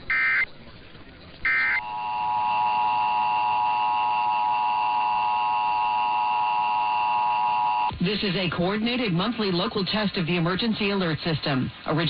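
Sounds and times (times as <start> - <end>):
screechy digital data bursts: 1.5 - 7.9.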